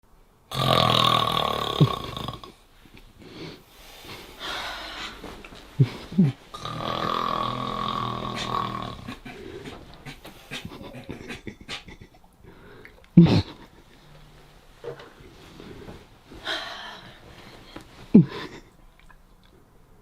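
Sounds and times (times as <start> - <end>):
man snoring loudly: 0.5 - 2.5, 6.5 - 9.4.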